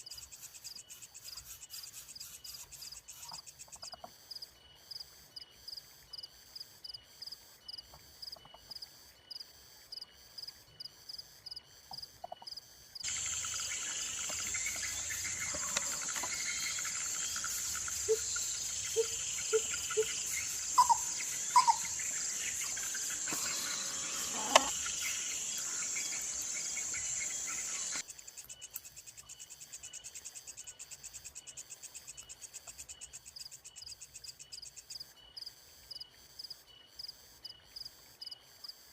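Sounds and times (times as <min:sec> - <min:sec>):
pulsing cricket chirps: 0:00.0 - 0:38.9
high-pitched insect buzz: 0:13.0 - 0:28.0.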